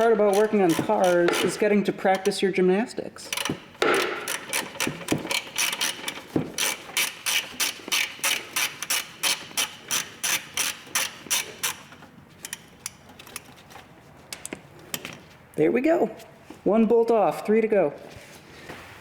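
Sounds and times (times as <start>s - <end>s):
ratchet wrench clicking: 0.0s - 1.6s, 3.3s - 13.5s.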